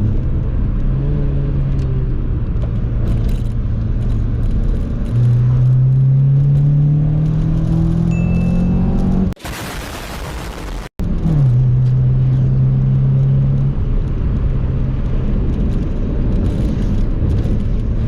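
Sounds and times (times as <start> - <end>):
car engine accelerating: 0.0 - 9.4.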